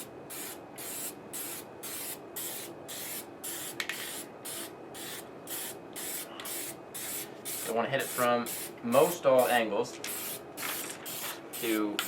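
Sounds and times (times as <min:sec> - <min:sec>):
aerosol spray hissing bursts: 0:00.3 - 0:08.7.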